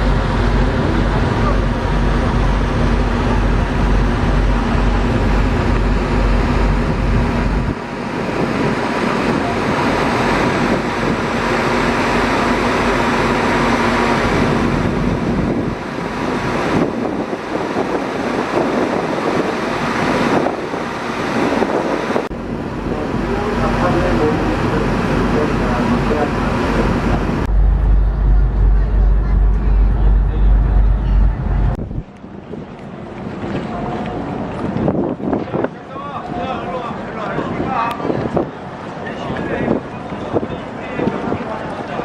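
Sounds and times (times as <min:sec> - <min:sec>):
road rushing noise: 0:00.0 - 0:32.7
deep hum: 0:00.0 - 0:34.2
vehicle engine rumble: 0:00.0 - 0:42.0.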